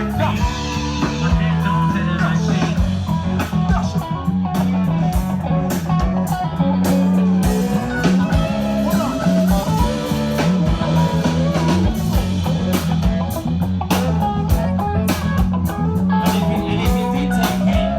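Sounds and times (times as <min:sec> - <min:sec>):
bass line: 0:00.0 - 0:17.9
electric guitar: 0:00.0 - 0:17.9
drum beat: 0:06.9 - 0:17.9.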